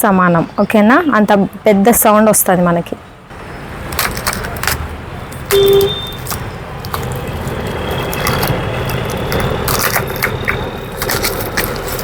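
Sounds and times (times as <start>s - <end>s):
package handling clicks and rustles: 4.0s - 4.8s, 5.4s - 12.0s
short tone: 5.5s - 6.2s.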